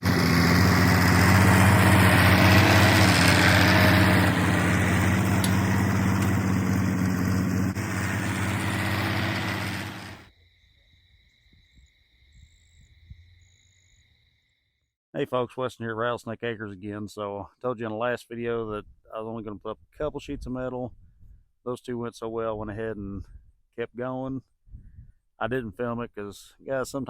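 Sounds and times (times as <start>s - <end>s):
engine running: 0.0s - 10.3s.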